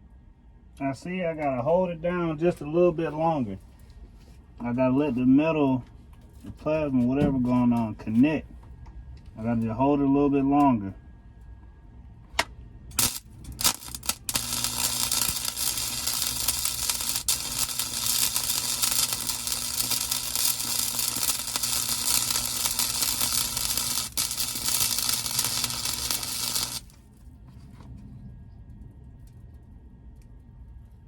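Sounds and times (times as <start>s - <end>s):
low hum: 7.4s - 31.0s
welding arc crackling: 12.9s - 27.0s.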